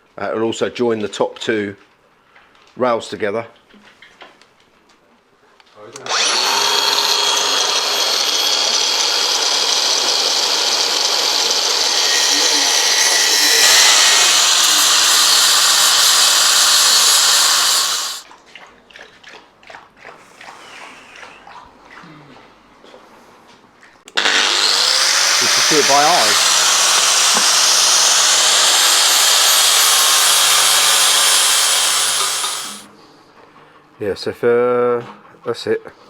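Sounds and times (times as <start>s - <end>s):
angle grinder on steel: 6.0s - 18.3s, 24.1s - 32.9s.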